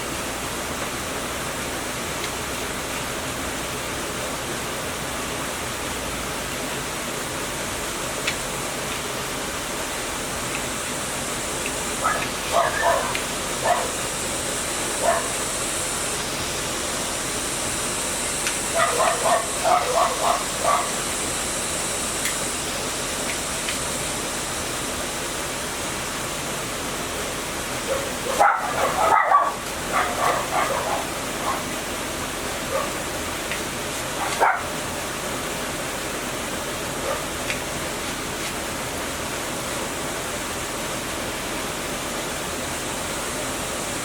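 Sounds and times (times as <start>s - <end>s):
steady background hiss: 0.0s - 44.0s
dog barking: 12.0s - 14.1s, 15.0s - 15.4s, 18.7s - 21.0s, 27.8s - 31.8s, 32.7s - 33.0s, 34.2s - 34.8s, 37.0s - 37.3s.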